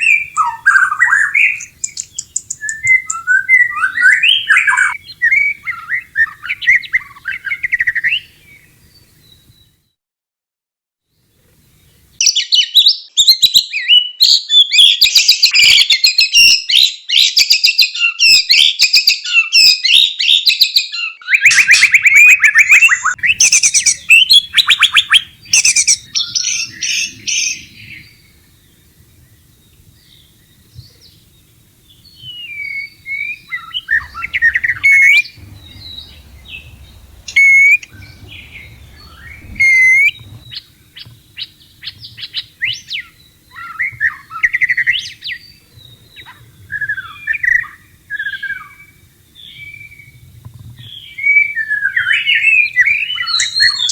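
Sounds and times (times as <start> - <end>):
bird chattering song: 0.0 - 9.7, 21.4 - 50.2, 50.8 - 53.9
bird whistled notes and calls: 0.0 - 9.8, 11.6 - 50.2, 50.8 - 53.9.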